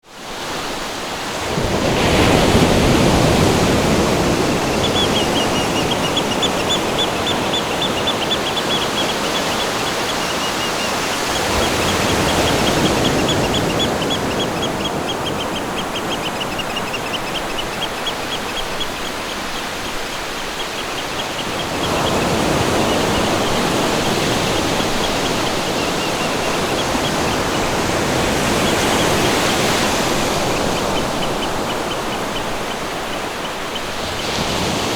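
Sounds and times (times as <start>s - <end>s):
rushing water: 0.1s - 34.9s
high fast trilling chirps: 3.3s - 27.6s.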